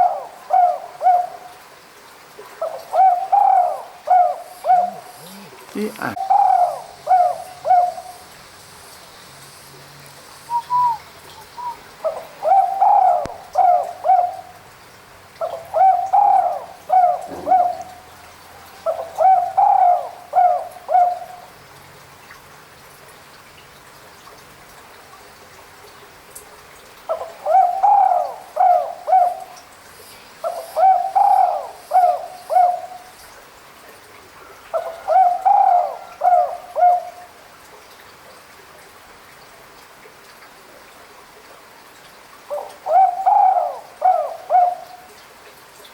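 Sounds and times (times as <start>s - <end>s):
dove cooing: 2.6s - 8.2s, 10.5s - 14.5s, 15.4s - 21.5s, 27.1s - 29.6s, 30.4s - 33.1s, 34.7s - 37.2s, 42.5s - 45.1s.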